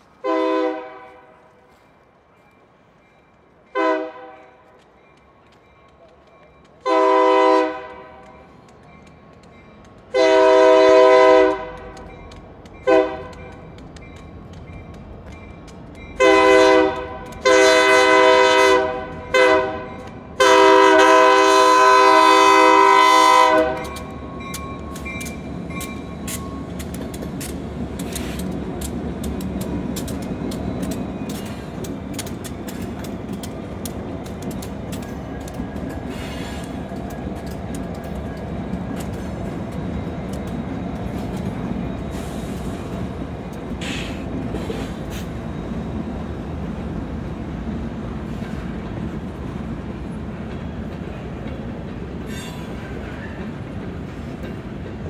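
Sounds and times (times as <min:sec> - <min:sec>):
train rumbling past: 0:00.0 - 0:55.0
locomotive horn blasts: 0:00.2 - 0:01.4, 0:03.7 - 0:04.6, 0:06.8 - 0:08.3, 0:10.1 - 0:12.0, 0:12.8 - 0:13.4, 0:16.2 - 0:24.0
wheels clicking over rail joints: 0:04.4 - 0:07.1, 0:07.7 - 0:10.8, 0:11.4 - 0:18.0, 0:22.0 - 0:45.5, 0:46.4 - 0:55.0.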